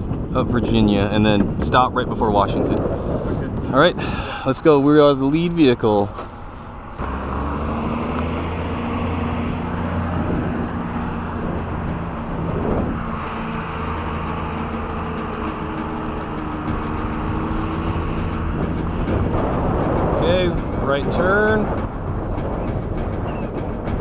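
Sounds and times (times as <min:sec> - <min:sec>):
road noise: 0:00.0 - 0:24.0
vehicle engine drone: 0:02.4 - 0:24.0
rush of noise: 0:06.4 - 0:24.0.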